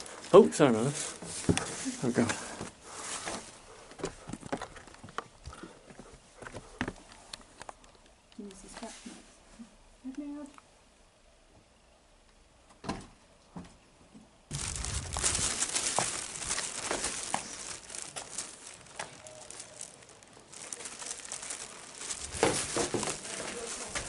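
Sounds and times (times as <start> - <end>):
crackling and rustling: 0.0 - 9.2, 14.5 - 24.0.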